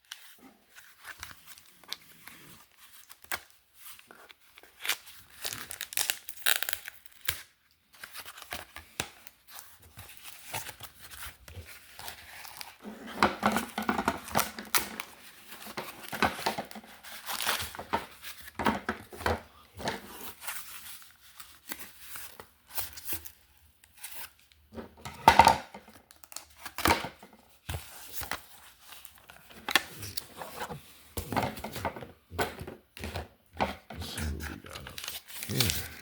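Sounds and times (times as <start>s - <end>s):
packaging tearing and crinkling: 1.0s - 9.2s, 13.6s - 18.6s, 25.9s - 27.0s, 34.4s - 36.0s.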